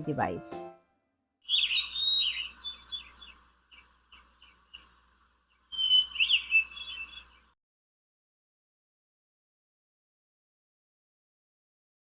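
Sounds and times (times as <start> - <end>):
birds chirping and twittering: 1.4 - 7.6.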